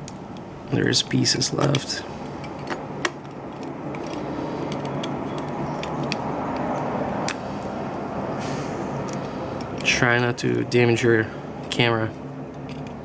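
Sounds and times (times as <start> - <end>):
steady background hum: 0.0 - 13.0.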